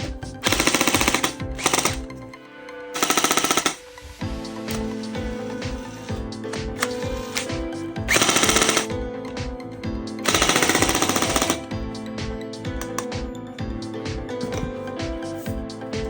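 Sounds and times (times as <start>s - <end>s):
background music with steady beat: 0.0s - 16.0s
toy gun rapid rattling: 0.4s - 2.1s, 3.0s - 3.8s, 8.1s - 8.9s, 10.2s - 11.6s.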